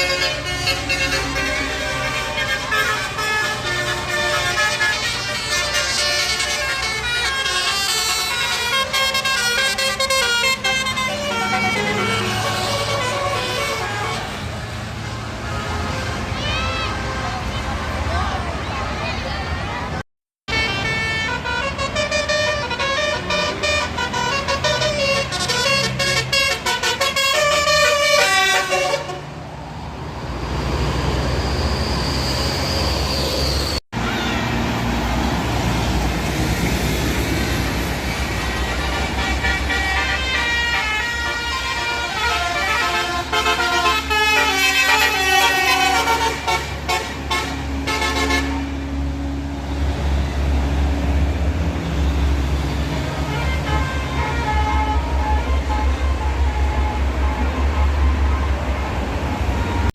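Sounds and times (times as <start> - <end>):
bus horn playing a tune: 0.0 - 18.1, 20.5 - 29.4, 38.2 - 48.9, 52.5 - 59.9
bus engine running: 0.0 - 59.9.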